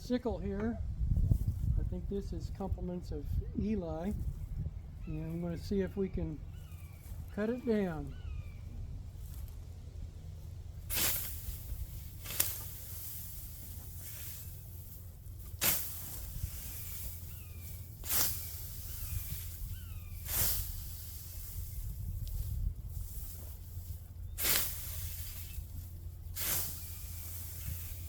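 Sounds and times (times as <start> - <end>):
sickle swishing through wheat: 9.1 - 9.6, 10.8 - 28.0.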